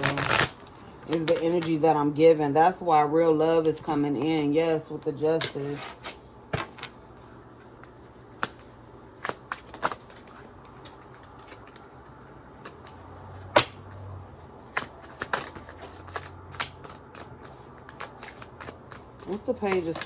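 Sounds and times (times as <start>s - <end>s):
cards being shuffled: 0.0s - 1.4s, 5.6s - 20.0s.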